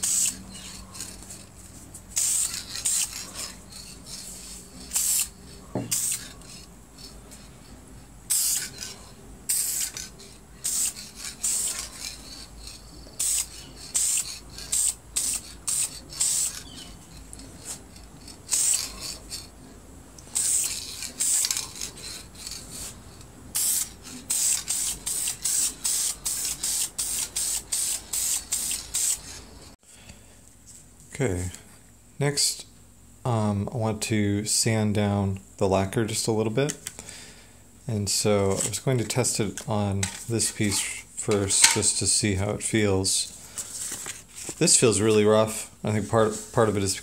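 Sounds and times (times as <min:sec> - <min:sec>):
spray can hissing: 0:00.0 - 0:00.4, 0:02.1 - 0:07.1, 0:08.3 - 0:08.9, 0:09.5 - 0:16.7, 0:18.5 - 0:19.1, 0:20.3 - 0:23.0, 0:23.6 - 0:29.4.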